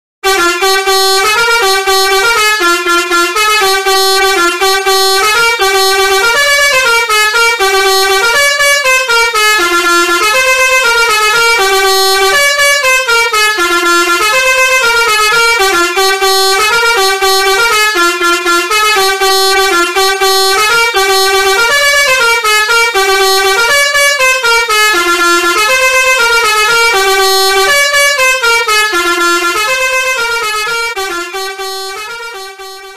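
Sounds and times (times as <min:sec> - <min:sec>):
bus horn playing a tune: 0:00.2 - 0:32.9.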